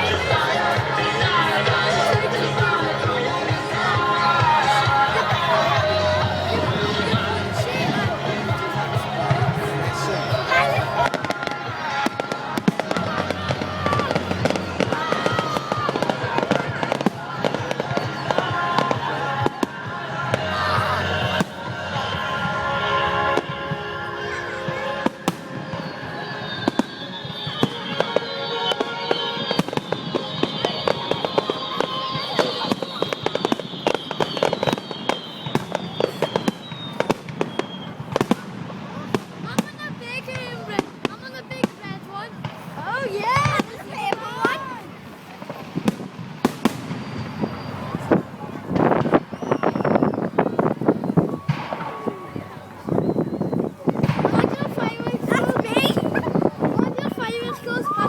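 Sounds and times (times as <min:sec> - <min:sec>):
fireworks cracking and banging: 0:00.0 - 0:58.0
firework whistle falling in pitch: 0:23.4 - 0:38.2, 0:49.0 - 0:54.2.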